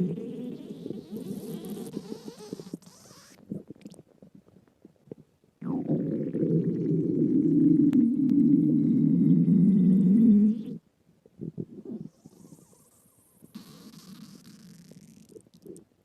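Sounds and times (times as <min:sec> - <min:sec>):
stomach growling: 0:00.0 - 0:10.8, 0:11.4 - 0:15.9
faint stomach gurgles: 0:00.0 - 0:16.0.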